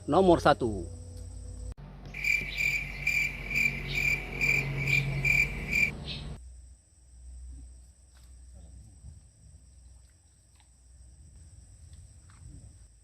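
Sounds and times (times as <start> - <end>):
insect high-pitched pulsed chirp: 0.0 - 8.8.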